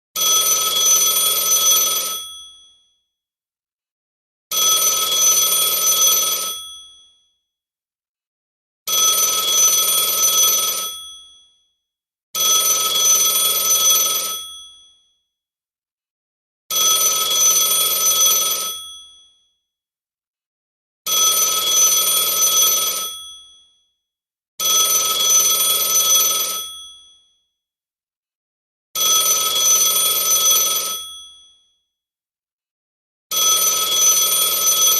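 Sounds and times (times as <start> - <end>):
telephone bell ringing: 0.2 - 2.8, 4.5 - 7.2, 8.9 - 11.5, 12.4 - 15.0, 16.7 - 19.3, 21.1 - 23.7, 24.6 - 27.2, 29.0 - 31.6, 33.3 - 34.9.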